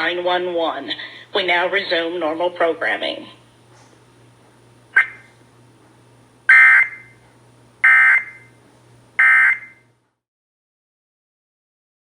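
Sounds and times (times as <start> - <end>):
buzzy data screech bursts: 7.8 - 8.4, 9.2 - 9.7.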